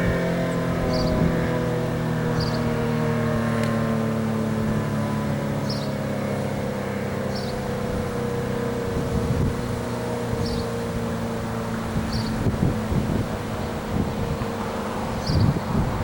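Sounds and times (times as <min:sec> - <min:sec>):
siren steady tone: 0:00.0 - 0:14.8.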